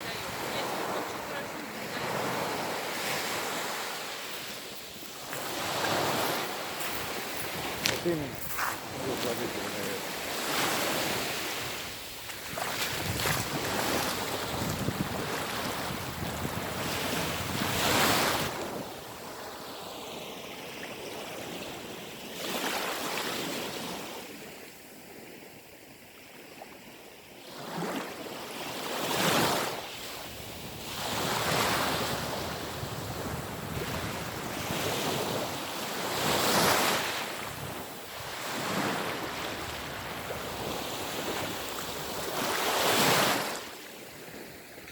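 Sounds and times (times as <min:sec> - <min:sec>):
sea waves breaking on shore: 0:00.0 - 0:24.6, 0:26.8 - 0:44.9
wind buffeting microphone: 0:04.3 - 0:18.9.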